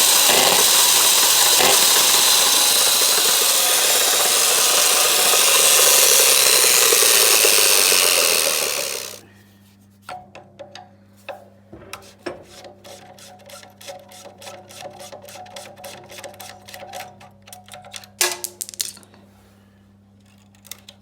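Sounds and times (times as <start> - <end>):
hand tools clicking and scraping: 0.0 - 9.2
tool clatter: 0.0 - 9.2, 17.8 - 19.1.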